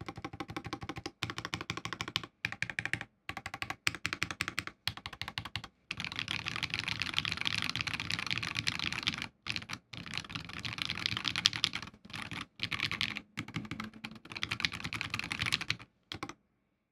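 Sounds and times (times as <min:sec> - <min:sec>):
fast typing on mechanical keyboard: 0:00.0 - 0:16.4.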